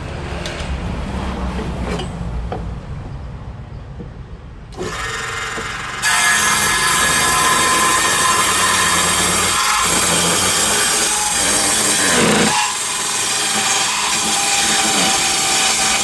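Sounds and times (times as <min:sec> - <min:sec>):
power saw ripping through wood: 0:04.8 - 0:16.0.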